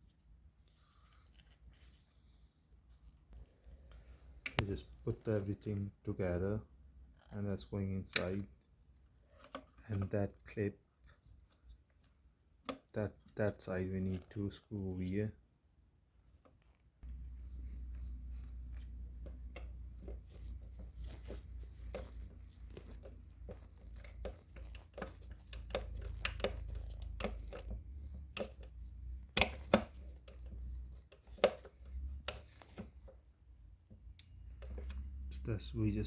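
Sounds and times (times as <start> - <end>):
plastic parts clicking and knocking: 16.4 - 33.2, 33.9 - 35.3.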